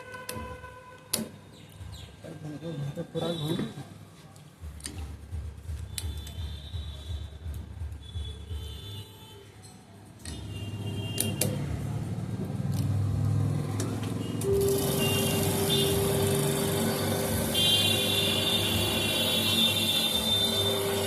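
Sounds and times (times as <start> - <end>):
electric fan motor humming: 10.8 - 21.0.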